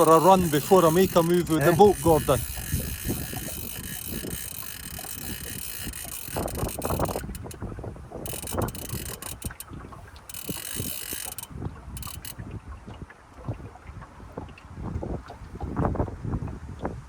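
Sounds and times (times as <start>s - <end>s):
fishing reel ratchet clicking: 0.0s - 7.6s, 8.2s - 12.4s.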